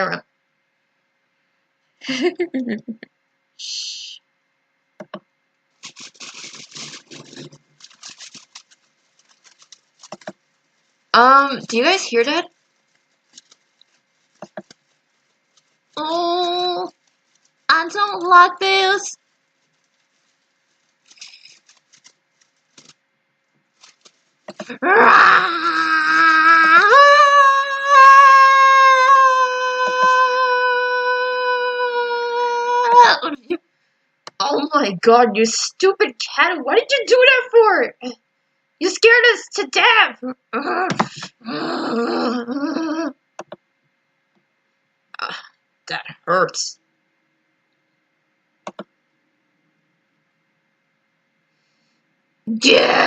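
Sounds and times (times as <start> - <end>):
foliage rustling and crackling: 5.7 - 27.3
loud scream: 24.8 - 33.0.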